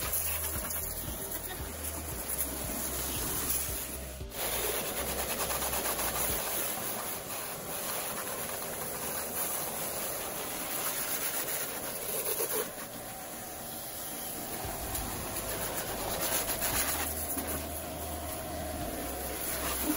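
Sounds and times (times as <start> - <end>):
pressure washer spraying water: 0.0 - 19.9.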